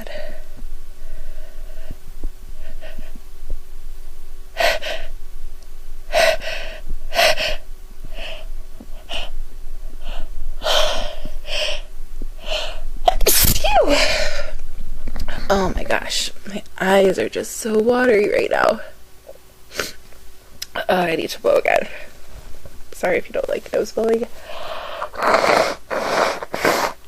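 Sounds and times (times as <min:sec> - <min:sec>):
woman sneezing: 0:13.1 - 0:14.0.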